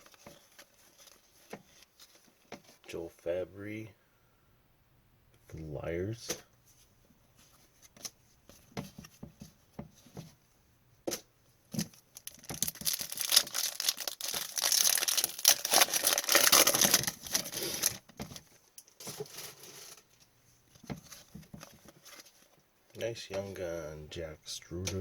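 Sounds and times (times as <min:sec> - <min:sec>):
wrapper tearing and crinkling: 0:12.1 - 0:18.0.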